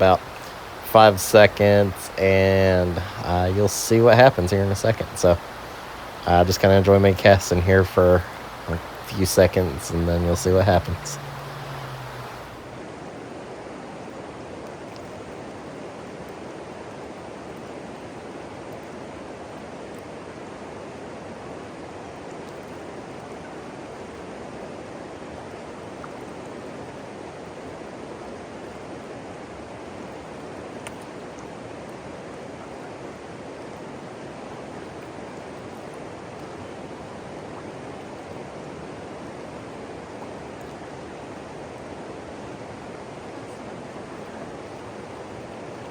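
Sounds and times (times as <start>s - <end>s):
river water rushing over rocks: 0.0s - 12.8s.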